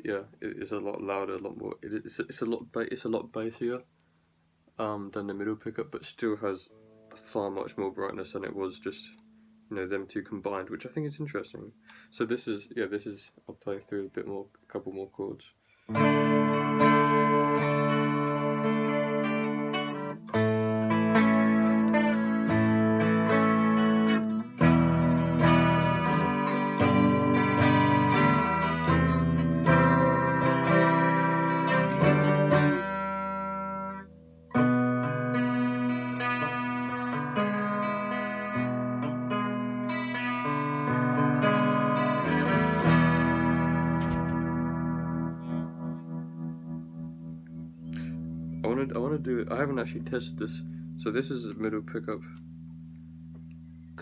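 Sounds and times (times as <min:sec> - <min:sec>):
electric guitar strumming chords: 0:15.9 - 0:54.0.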